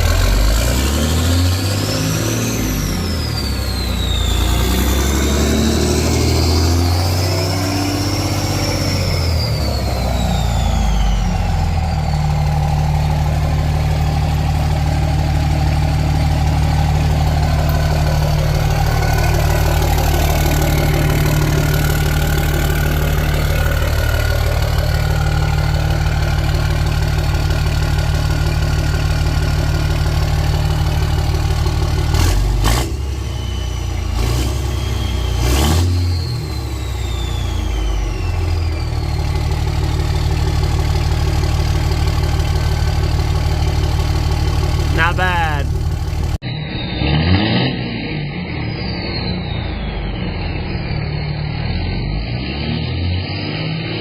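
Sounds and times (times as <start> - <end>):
diesel engine droning: 0.0 - 54.0
turbo whistle: 3.0 - 12.6, 33.1 - 39.2, 46.4 - 52.5.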